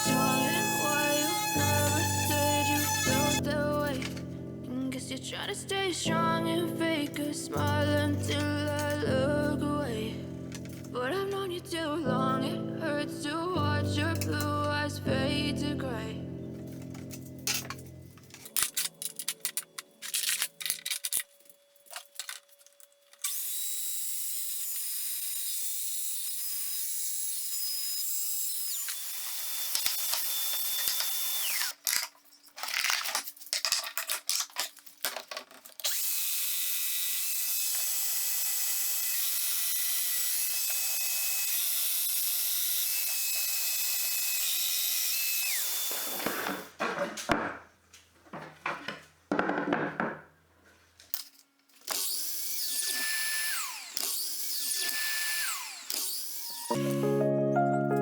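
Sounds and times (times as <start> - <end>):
power tool running on wood: 0.0 - 3.4, 35.9 - 46.7, 52.0 - 56.8
clicks and knocks of handling: 16.7 - 23.2, 31.8 - 35.9.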